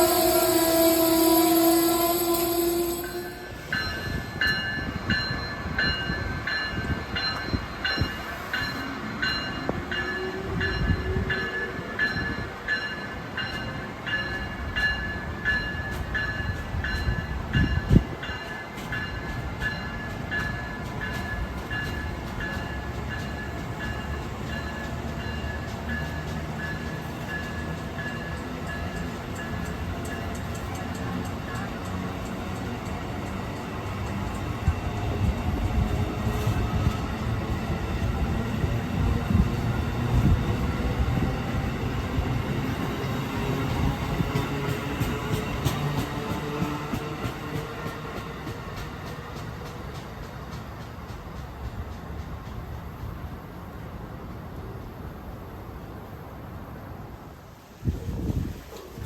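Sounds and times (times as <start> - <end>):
train horn: 0.0 - 3.9
train bell ringing: 0.0 - 46.1
rolling train noise: 0.0 - 59.0.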